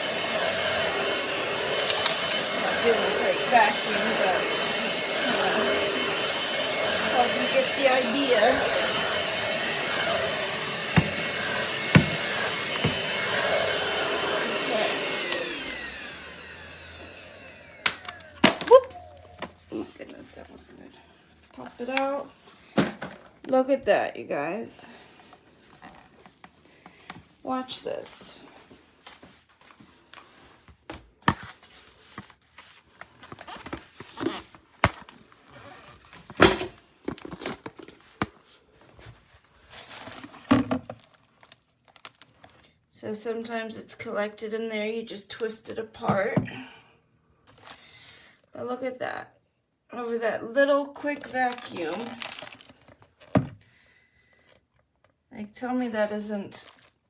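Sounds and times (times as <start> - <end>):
stick vacuum motor whine: 0.0 - 19.9
vacuum motor winding down: 0.0 - 20.0.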